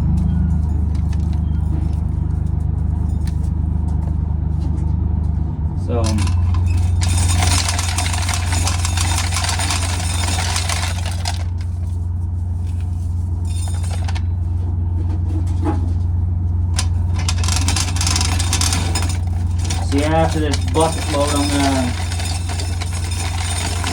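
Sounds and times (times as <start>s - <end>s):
corn kernels rattling by hand: 6.1s - 12.0s, 13.5s - 14.2s, 16.8s - 23.9s.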